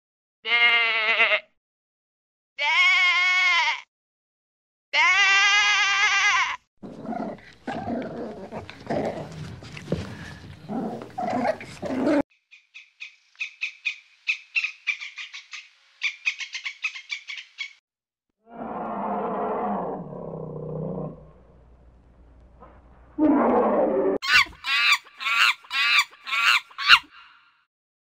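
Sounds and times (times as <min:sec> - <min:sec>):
sheep bleating: 0:00.5 - 0:01.6, 0:02.6 - 0:03.9, 0:05.0 - 0:06.6
high-pitched animal chattering: 0:24.2 - 0:27.1.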